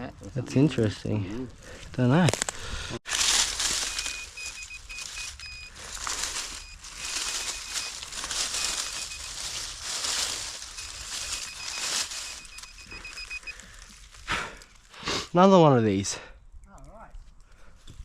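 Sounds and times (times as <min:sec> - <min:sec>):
soil rustling and scraping: 0:00.6 - 0:15.1
metal detector beep: 0:03.5 - 0:13.7.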